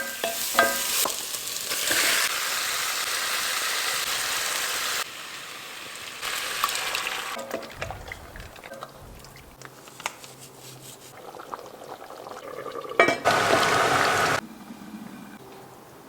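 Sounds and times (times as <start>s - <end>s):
liquid rushing into pot: 6.2s - 10.0s, 11.1s - 14.4s.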